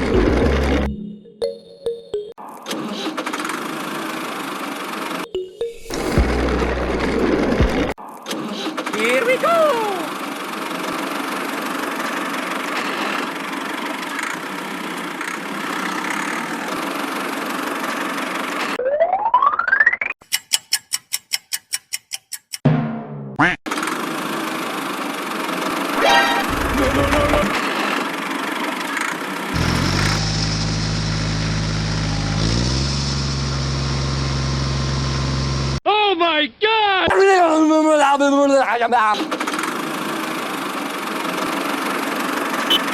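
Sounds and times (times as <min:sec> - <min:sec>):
small engine running: 0:00.0 - 0:00.9, 0:05.9 - 0:08.0, 0:10.0 - 0:18.8, 0:23.7 - 0:35.8, 0:39.2 - 0:42.9.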